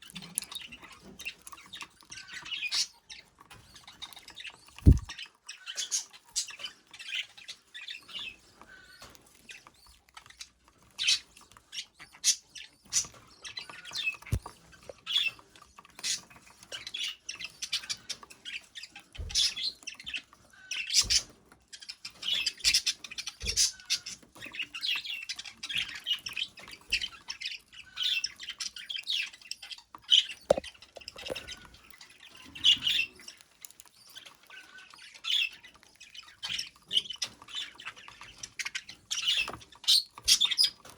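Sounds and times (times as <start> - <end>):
sharp taps: 4.8 - 5.1
budgerigar chattering and chirping: 4.8 - 6.1.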